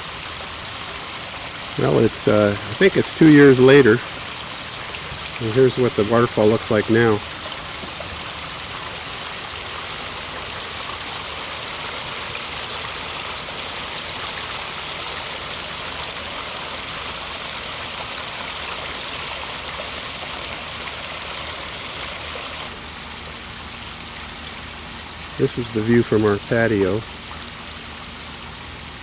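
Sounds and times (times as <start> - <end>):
water splashing over rocks: 0.0 - 22.7.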